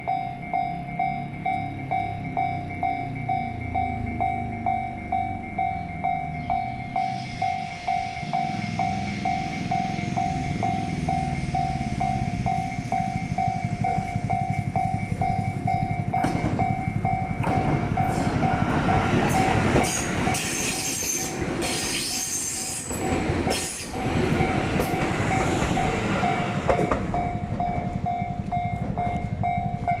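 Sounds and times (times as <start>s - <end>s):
level crossing warning bell: 0.0s - 21.6s, 22.9s - 30.0s
train passing: 0.0s - 30.0s
train wheels clattering over rail joints: 13.7s - 30.0s.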